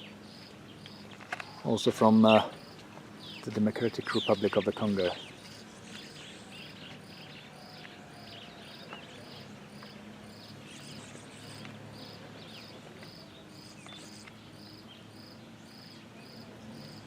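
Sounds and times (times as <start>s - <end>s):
insect chirping: 2.4s - 3.4s.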